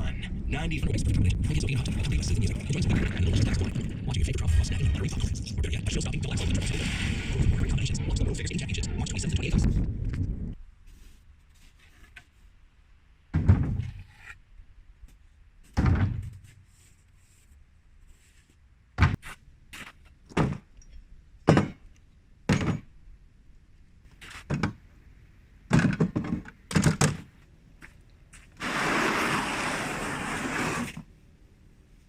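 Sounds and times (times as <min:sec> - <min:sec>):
rustling scraping noise: 0:10.8 - 0:12.6, 0:28.3 - 0:31.1
knocks and thunks: 0:13.3 - 0:14.0, 0:15.7 - 0:16.5, 0:19.0 - 0:19.2, 0:20.3 - 0:20.7, 0:21.4 - 0:21.8, 0:22.5 - 0:22.9, 0:25.7 - 0:27.3.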